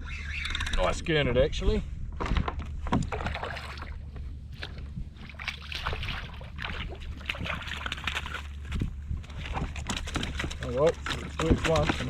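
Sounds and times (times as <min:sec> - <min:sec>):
steady low rumble: 0:00.0 - 0:12.0
water slapping against a hull: 0:02.2 - 0:12.0
small knocks and rustles: 0:08.7 - 0:12.0.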